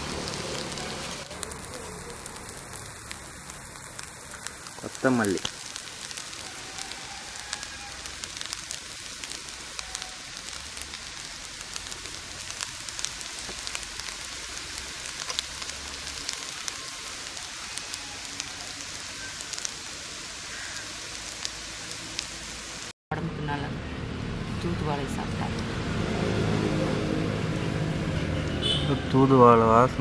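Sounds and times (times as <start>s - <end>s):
food sizzling in hot oil: 0.0s - 22.9s.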